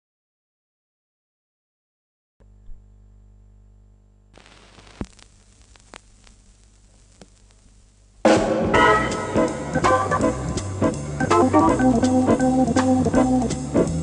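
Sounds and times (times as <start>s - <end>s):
jazz organ and band: 8.3s - 14.0s.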